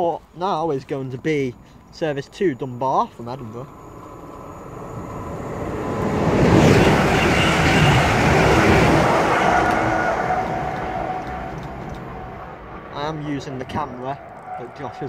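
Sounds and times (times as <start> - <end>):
train passing at speed: 3.7 - 15.0.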